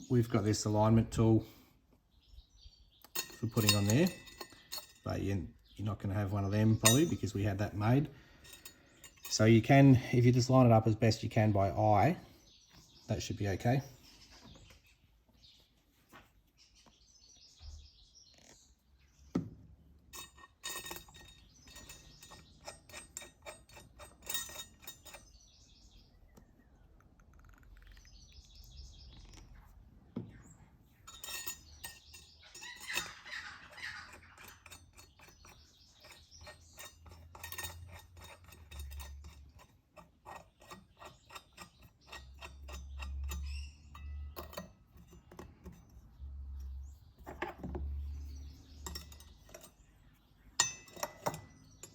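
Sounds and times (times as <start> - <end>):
metallic clinks of tools: 3.1 - 5.2, 6.8 - 9.7, 20.1 - 25.4, 31.1 - 33.3, 34.4 - 45.9, 46.5 - 49.9, 50.6 - 51.9
faint bird chirps: 12.3 - 19.4, 24.5 - 37.7, 40.6 - 51.9.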